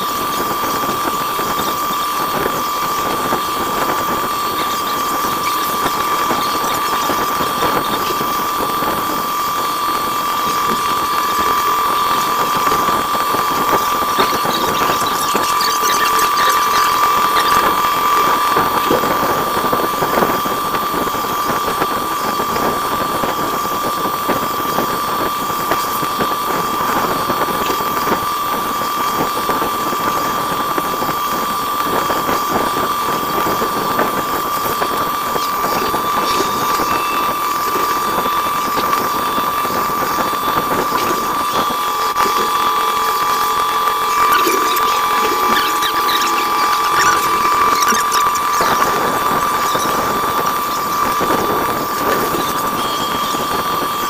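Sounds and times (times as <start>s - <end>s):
spindle high whine: 0.0s - 54.0s
crackling hiss of cutting: 29.0s - 53.6s.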